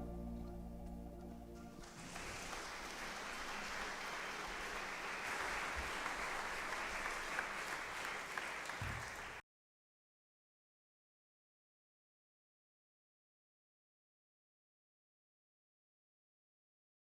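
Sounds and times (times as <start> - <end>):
audience applauding: 1.8 - 9.4.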